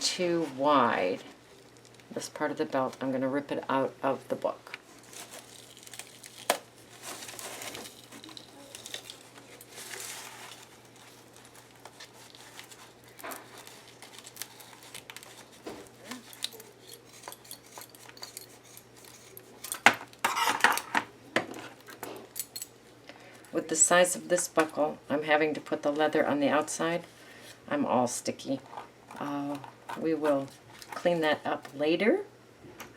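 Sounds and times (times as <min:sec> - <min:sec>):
belt rustling: 0:04.9 - 0:19.9.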